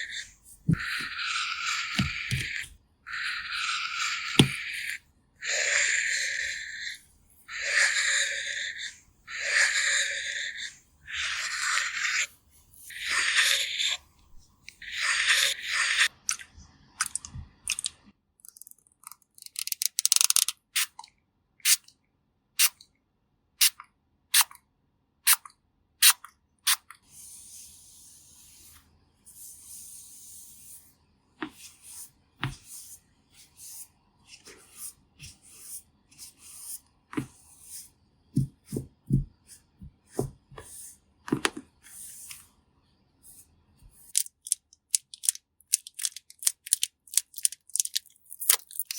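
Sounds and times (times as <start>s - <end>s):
makeup tools clicking: 44.1s - 48.9s.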